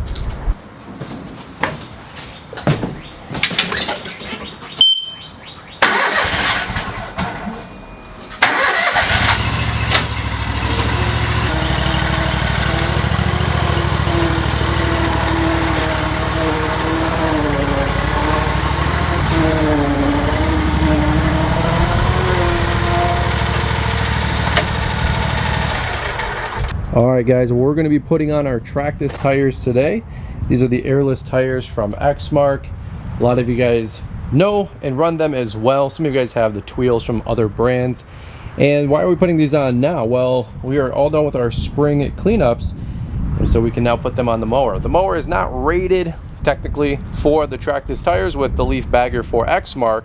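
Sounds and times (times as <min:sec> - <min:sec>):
mower engine running: 0:05.8 - 0:07.3, 0:08.4 - 0:26.8
clanks and rattles: 0:09.3 - 0:26.8.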